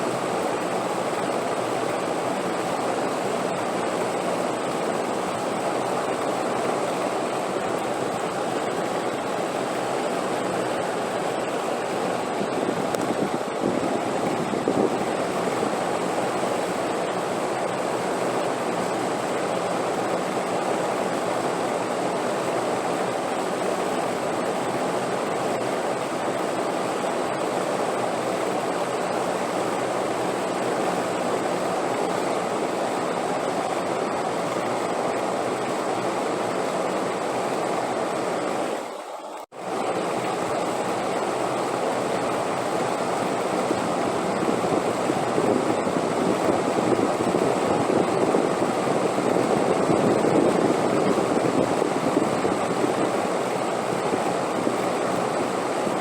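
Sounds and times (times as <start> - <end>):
rushing wind: 0.6 - 25.3, 39.6 - 56.0.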